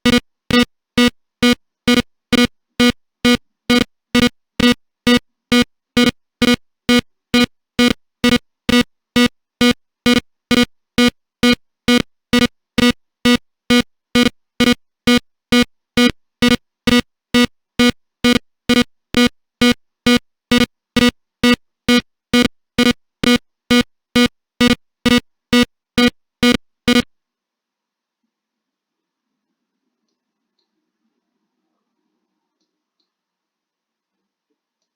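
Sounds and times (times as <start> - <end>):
alarm clock buzzer beeping: 0.0 - 27.1.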